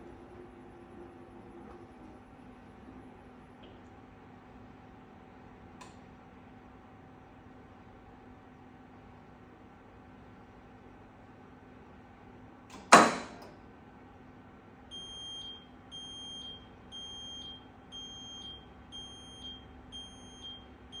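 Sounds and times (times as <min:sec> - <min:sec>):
washing machine clunk: 0:12.7 - 0:13.6.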